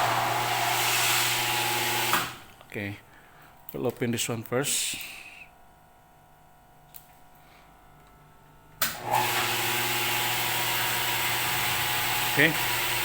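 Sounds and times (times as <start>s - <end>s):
water pump motor hum: 0.0s - 2.4s, 8.8s - 13.0s.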